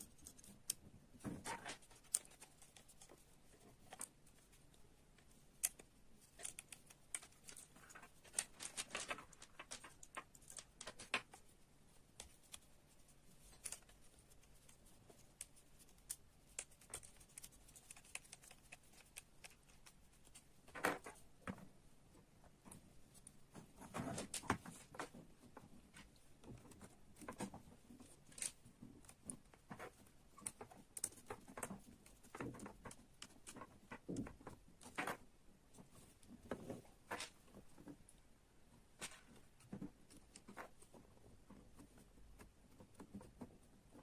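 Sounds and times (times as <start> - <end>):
small plastic parts clicking: 0.0 - 11.5, 13.4 - 21.6, 24.1 - 35.3.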